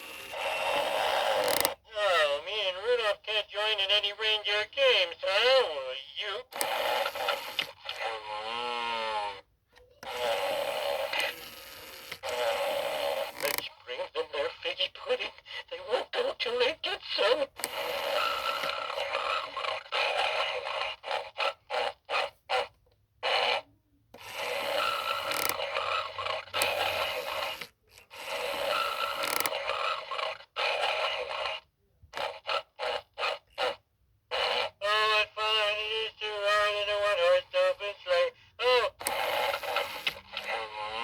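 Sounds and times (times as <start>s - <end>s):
recorded snoring through small speaker: 0.0s - 1.8s, 6.6s - 9.3s, 10.0s - 13.7s, 17.6s - 22.4s, 23.2s - 34.8s, 38.9s - 41.0s.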